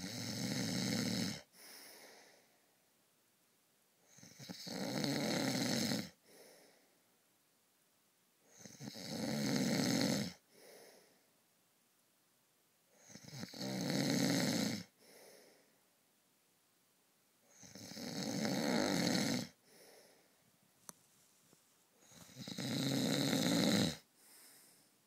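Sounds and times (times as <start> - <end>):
person snoring: 0.0 - 2.4, 4.1 - 6.8, 8.5 - 11.1, 13.0 - 15.6, 17.5 - 20.2, 22.0 - 24.8
quiet breath: 1.3 - 3.0, 6.1 - 7.2, 10.2 - 11.5, 14.8 - 16.1, 19.4 - 22.5, 23.9 - 25.0.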